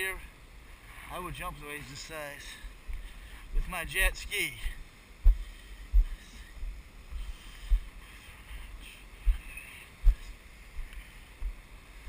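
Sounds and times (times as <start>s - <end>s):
low thumps on microphone: 5.2s - 7.9s, 9.2s - 11.6s.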